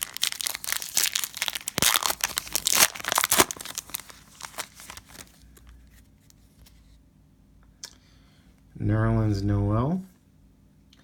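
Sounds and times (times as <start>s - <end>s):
cellophane wrapper crinkling: 0.0s - 5.8s.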